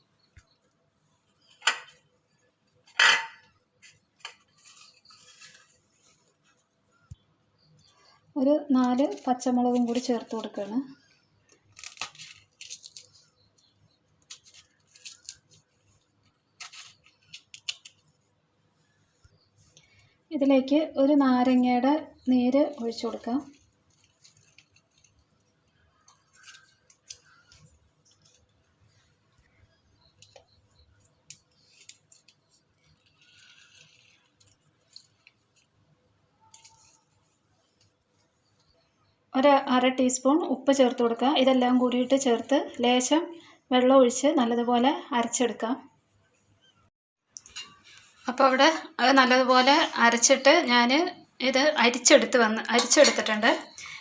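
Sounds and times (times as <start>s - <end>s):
chillies clicking and rustling: 0.3s - 18.4s, 19.2s - 38.8s, 47.3s - 54.0s
lemon squishing: 11.5s - 18.2s.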